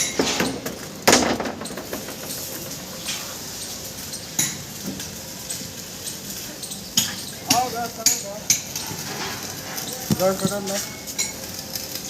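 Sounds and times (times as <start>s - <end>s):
knocks and clanks: 0.0s - 3.3s.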